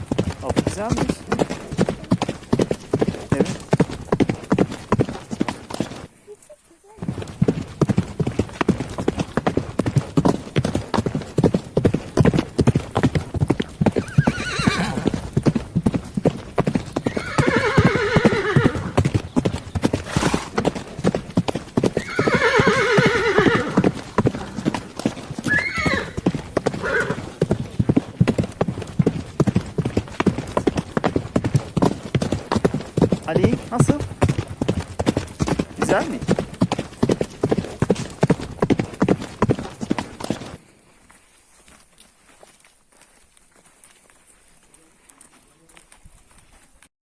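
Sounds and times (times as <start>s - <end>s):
horse hooves clopping: 0.0s - 46.9s
horses whinnying: 12.2s - 40.2s.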